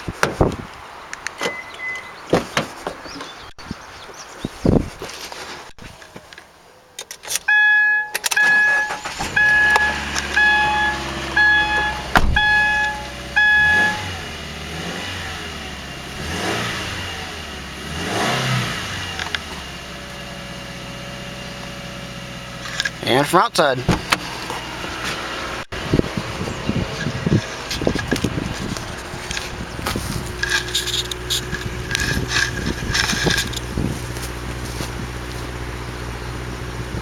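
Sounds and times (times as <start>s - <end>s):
warning chime beeps: 7.5s - 14.3s
car engine idling: 7.5s - 17.9s, 18.7s - 37.0s
car engine starting and revving: 8.4s - 37.0s.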